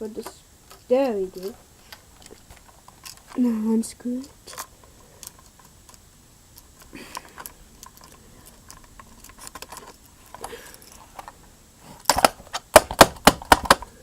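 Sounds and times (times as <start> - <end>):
tool and parts clacking: 6.6 - 11.4, 12.0 - 13.9.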